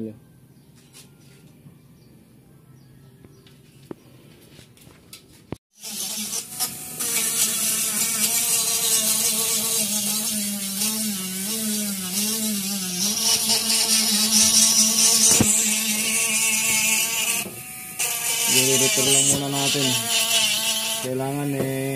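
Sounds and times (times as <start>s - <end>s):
power tool motor running: 5.8s - 21.2s.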